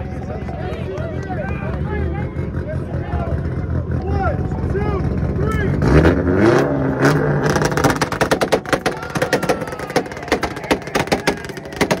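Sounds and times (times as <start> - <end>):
car engine revving on limiter: 5.0 - 8.9
exhaust pops and bangs: 7.2 - 12.0.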